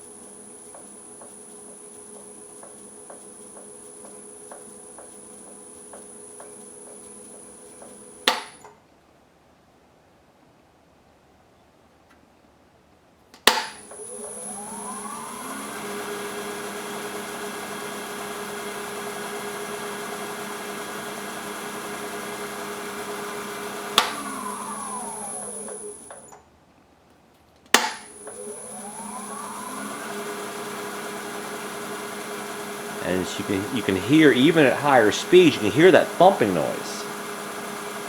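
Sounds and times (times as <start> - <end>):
lathe motor whining: 14.1 - 26.0, 28.3 - 33.0, 37.0 - 38.0.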